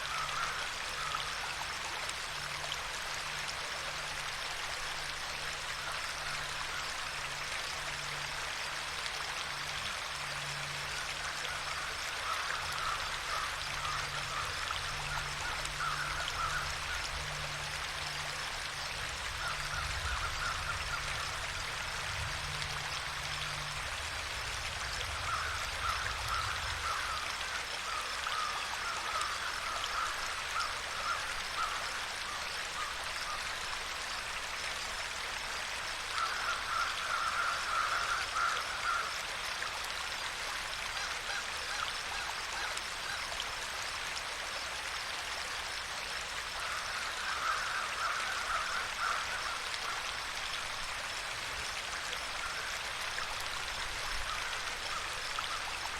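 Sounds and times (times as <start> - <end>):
stream of water running: 0.0 - 55.9.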